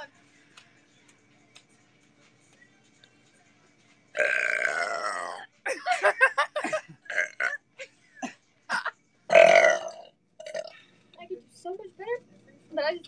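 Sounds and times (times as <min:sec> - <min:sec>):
girl burping: 0:04.2 - 0:05.4, 0:07.1 - 0:07.6, 0:08.7 - 0:10.8.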